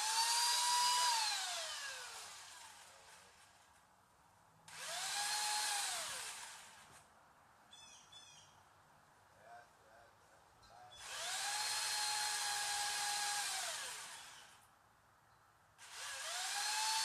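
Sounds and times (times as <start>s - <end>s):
chainsaw engine revving: 0.0s - 3.6s, 4.7s - 7.0s, 11.0s - 14.6s, 15.8s - 17.0s.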